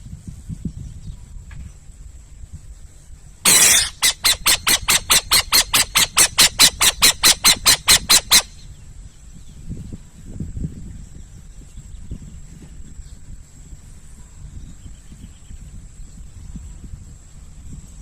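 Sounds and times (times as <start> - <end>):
owl screeching: 3.5 - 8.6.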